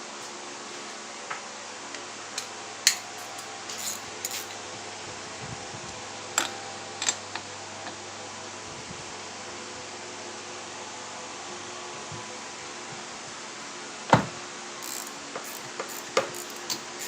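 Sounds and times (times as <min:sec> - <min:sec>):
steady background hum: 0:00.0 - 0:17.0
metallic clinks of wrench: 0:02.9 - 0:04.6, 0:14.8 - 0:17.0.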